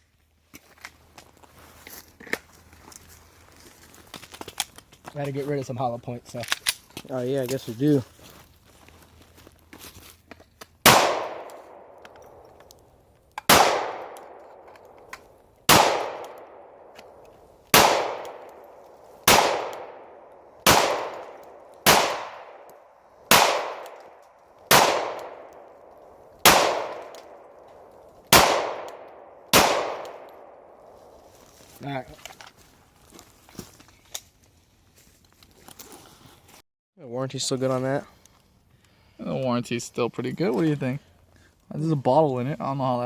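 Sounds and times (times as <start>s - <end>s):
pistol shots echoing: 10.8s - 12.5s, 13.5s - 15.0s, 15.7s - 30.9s.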